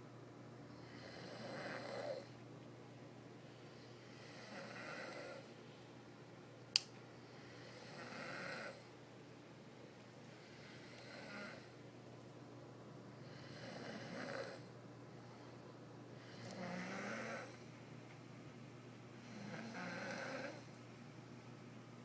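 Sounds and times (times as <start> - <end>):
person snoring: 0.9 - 2.3, 4.2 - 5.5, 7.6 - 8.8, 10.8 - 11.7, 13.2 - 14.7, 16.3 - 17.6, 19.3 - 20.7
sharp click: 6.7 - 7.0.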